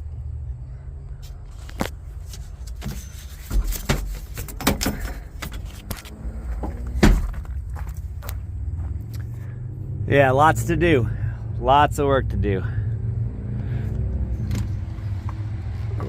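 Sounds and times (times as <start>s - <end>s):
car interior parts clicking and knocking: 1.9s - 8.0s
steady low hum: 3.4s - 16.0s.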